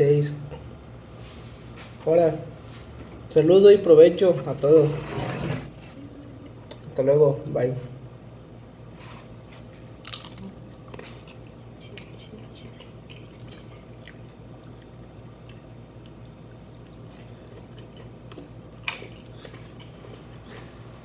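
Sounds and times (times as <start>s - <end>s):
steady low hum: 0.0s - 21.0s
chewing crunchy chips: 10.0s - 20.9s.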